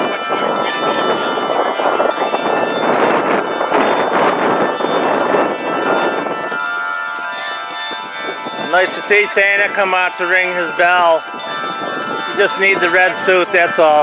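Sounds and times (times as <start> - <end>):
church bells ringing: 0.0 - 14.0.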